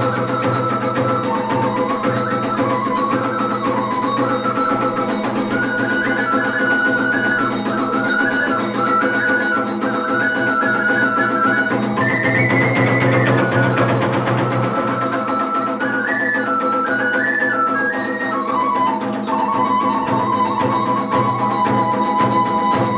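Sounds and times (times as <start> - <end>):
flute-like melody: 0.0 - 22.9.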